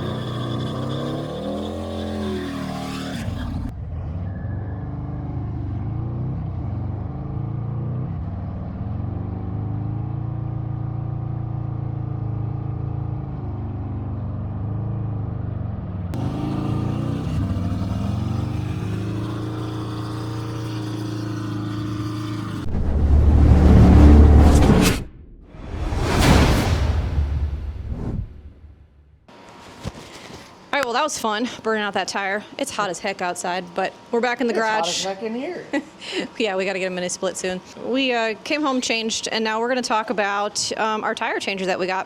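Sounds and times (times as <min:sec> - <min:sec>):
motorcycle engine revving hard: 0:00.0 - 0:24.8.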